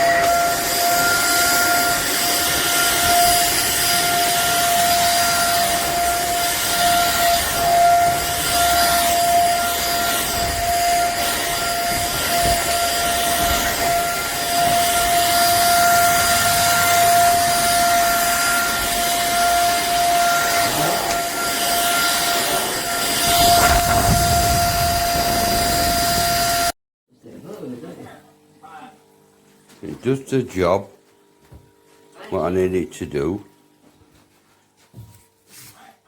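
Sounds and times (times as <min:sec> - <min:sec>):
vacuum cleaner motor whining: 0:00.0 - 0:26.7.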